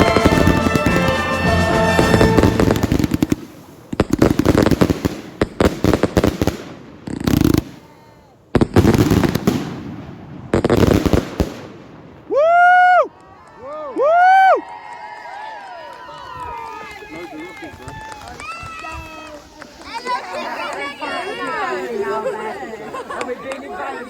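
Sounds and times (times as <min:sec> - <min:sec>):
fireworks bangs and crackles: 0:00.0 - 0:12.3
person whooping: 0:12.3 - 0:17.0.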